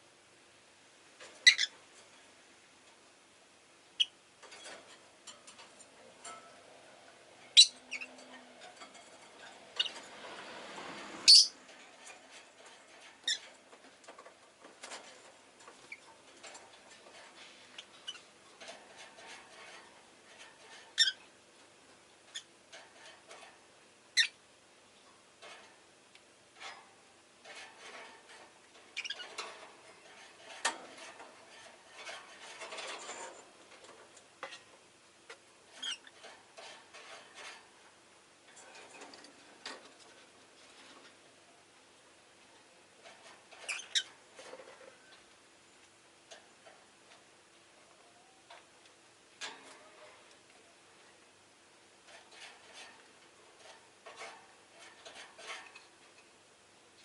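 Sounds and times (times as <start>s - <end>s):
faint rustling and scratching: 1.0s - 3.4s, 4.4s - 24.2s, 24.9s - 57.0s
bird chirping: 7.6s - 8.2s, 11.2s - 11.6s.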